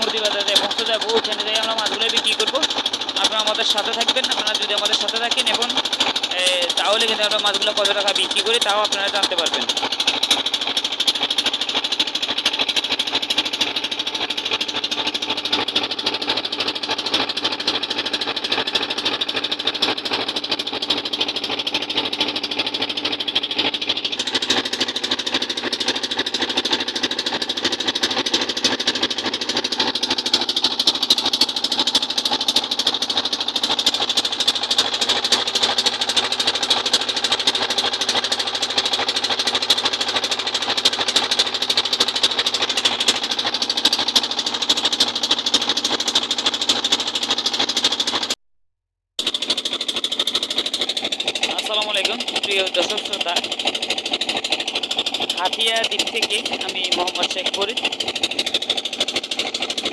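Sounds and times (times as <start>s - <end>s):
boat engine chugging: 0.0s - 48.4s, 49.2s - 59.9s.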